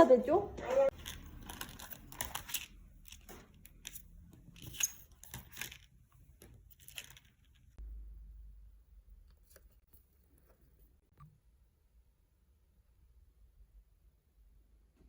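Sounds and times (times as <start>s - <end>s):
small objects clicking and rustling: 0.9s - 7.8s.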